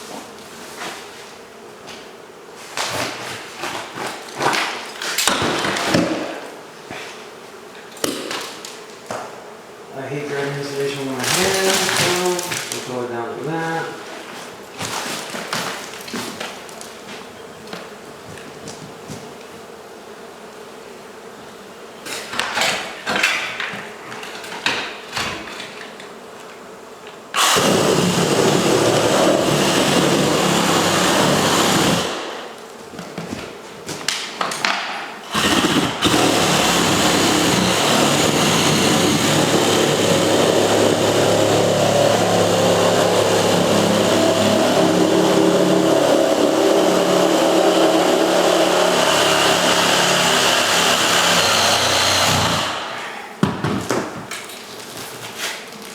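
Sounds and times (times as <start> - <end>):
vacuum motor running: 27.4 - 32.4, 35.3 - 53.0.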